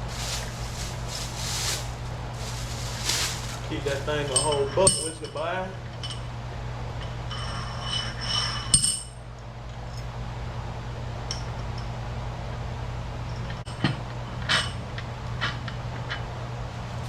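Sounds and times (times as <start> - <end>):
steady low hum: 0.0 - 17.0
metal parts clinking: 3.1 - 5.4.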